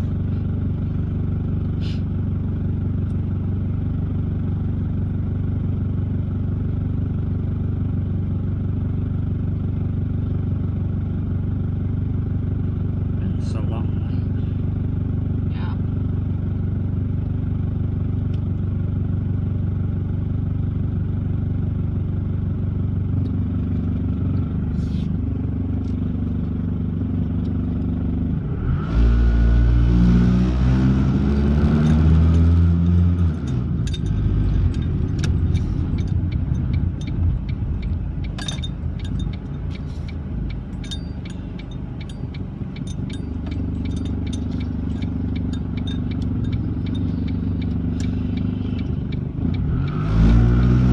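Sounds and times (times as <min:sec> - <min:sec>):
car engine from inside cabin: 0:00.0 - 0:50.9
regular clicks: 0:31.8 - 0:50.1.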